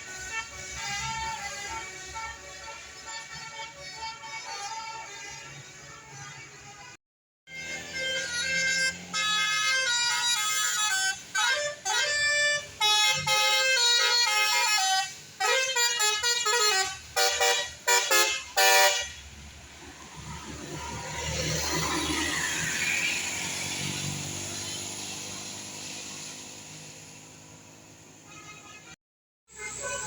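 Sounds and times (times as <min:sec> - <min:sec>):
multi-tone musical bus horn: 0:00.0 - 0:19.4, 0:28.2 - 0:30.0
bus passing by: 0:00.0 - 0:30.0.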